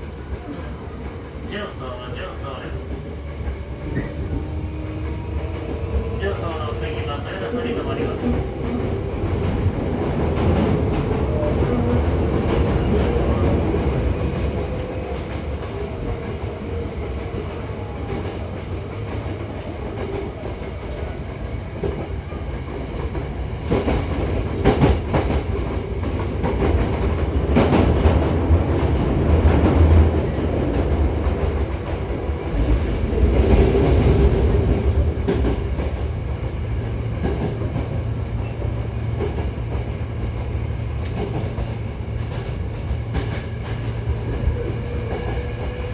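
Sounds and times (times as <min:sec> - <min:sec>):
train rumbling: 0:00.0 - 0:45.9.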